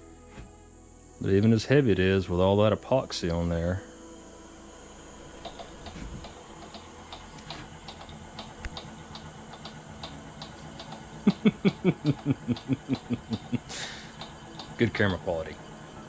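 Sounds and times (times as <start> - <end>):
wood lathe spinning: 5.0 - 15.8
faint regular ticking: 5.4 - 15.2
loud rhythmic thumps: 7.4 - 14.8.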